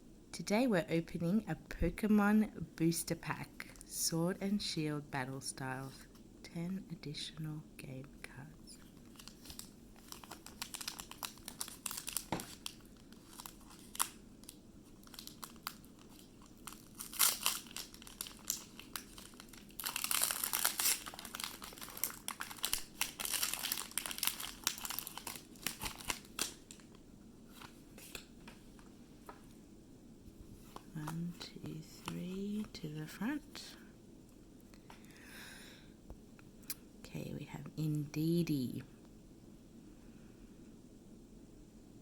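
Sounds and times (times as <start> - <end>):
foil wrapper crinkling and tearing: 9.0 - 26.9.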